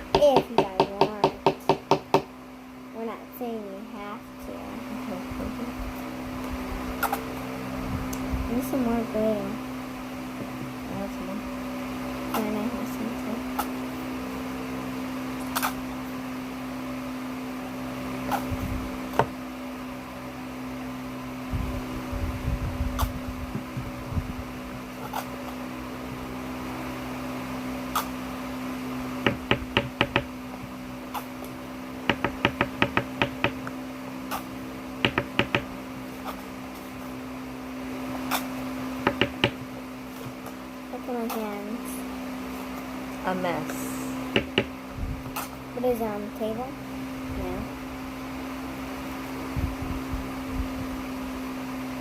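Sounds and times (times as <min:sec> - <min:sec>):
steady low hum: 0:00.0 - 0:52.0.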